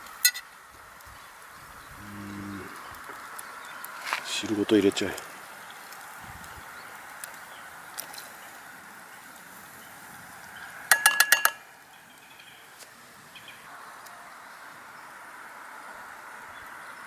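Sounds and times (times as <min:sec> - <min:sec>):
metal clinks on cooking pot: 0:10.9 - 0:11.6.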